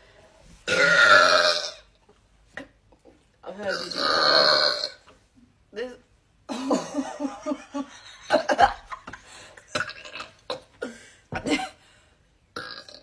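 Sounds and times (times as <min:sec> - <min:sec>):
woman burping: 0:00.7 - 0:01.8, 0:03.6 - 0:05.0, 0:06.5 - 0:07.5, 0:09.7 - 0:11.8, 0:12.6 - 0:13.0
woman coughing: 0:06.5 - 0:07.6, 0:09.7 - 0:11.8.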